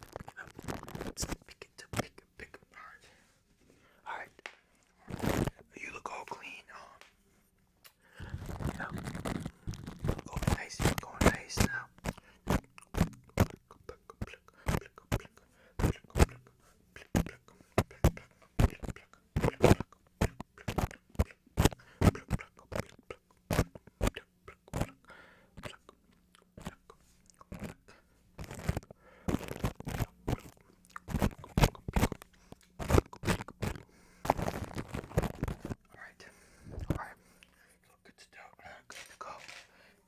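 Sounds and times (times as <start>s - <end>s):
wet lip and tongue clicks: 11.3s - 16.5s, 25.6s - 27.9s, 29.6s - 33.8s.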